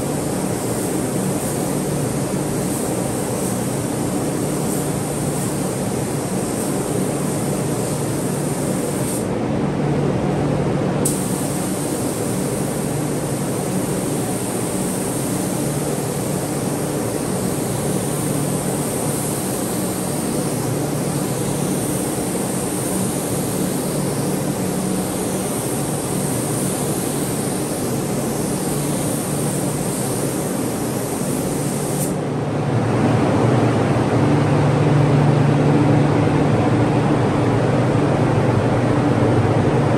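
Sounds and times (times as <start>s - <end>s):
spray gun hissing: 0.0s - 9.3s, 11.0s - 32.2s
ventilation fan hum: 0.0s - 39.9s.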